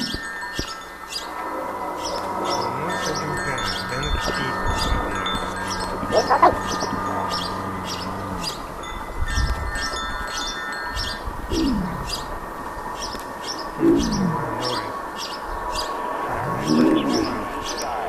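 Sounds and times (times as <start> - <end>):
chime-like ringing: 0.0 - 12.0.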